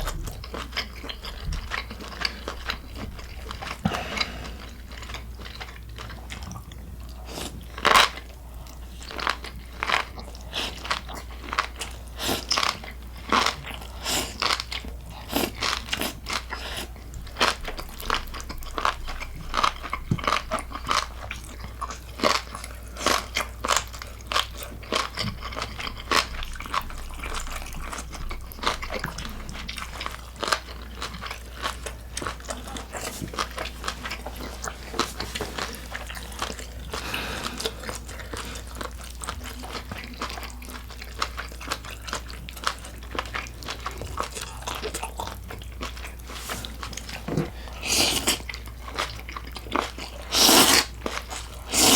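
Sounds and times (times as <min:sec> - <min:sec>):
crunchy food being chewed: 0:00.0 - 0:51.9.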